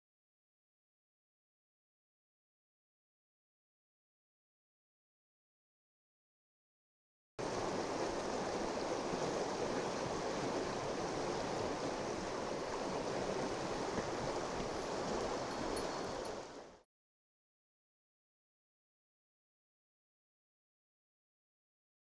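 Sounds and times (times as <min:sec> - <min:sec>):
mountain stream rushing: 0:07.4 - 0:16.8.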